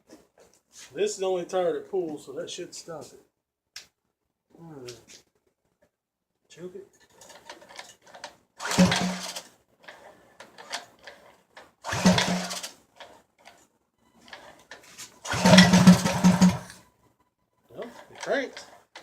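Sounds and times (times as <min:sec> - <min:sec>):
small engine cranking and firing: 0:07.2 - 0:13.6, 0:14.3 - 0:16.8.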